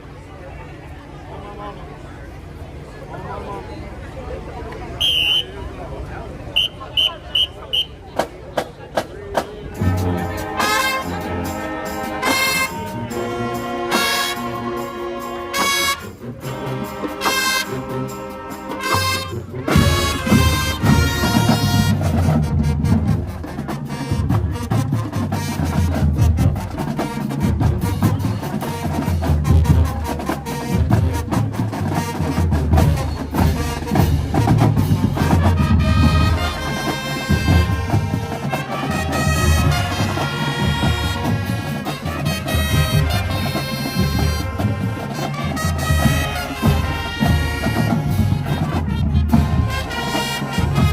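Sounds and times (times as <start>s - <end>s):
brass section playing chords: 5.0s - 5.7s, 6.6s - 8.0s, 9.8s - 50.9s
snare drumline rapid strokes: 18.7s - 50.9s.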